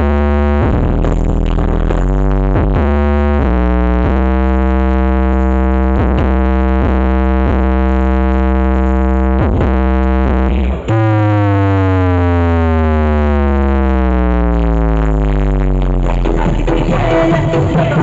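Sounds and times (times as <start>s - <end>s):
loud dance music with heavy bass: 0.0s - 18.0s.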